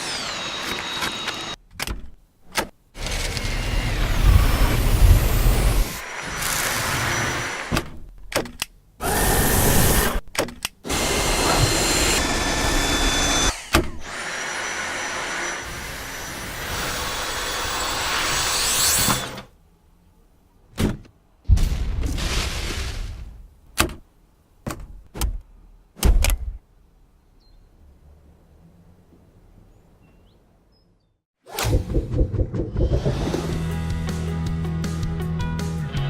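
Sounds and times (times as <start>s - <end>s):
vacuum cleaner motor running: 0.0s - 1.5s
sharp clicks and thunks: 1.0s - 2.8s, 7.7s - 8.8s, 10.2s - 10.8s, 23.7s - 26.6s.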